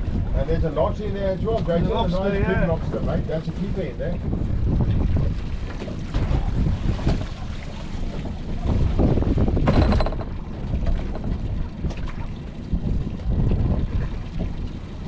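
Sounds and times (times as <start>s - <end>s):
low rumble of water: 0.0s - 15.0s
wind buffeting microphone: 0.0s - 15.0s
short knocks: 9.6s - 10.4s.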